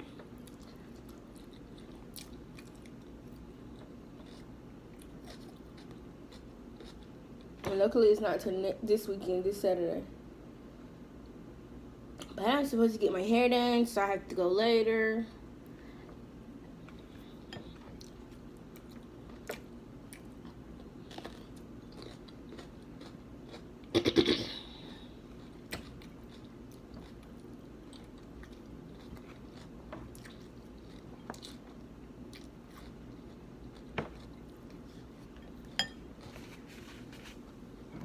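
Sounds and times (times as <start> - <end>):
person chewing and crunching food: 0.0 - 7.6, 16.8 - 23.9, 24.7 - 37.9.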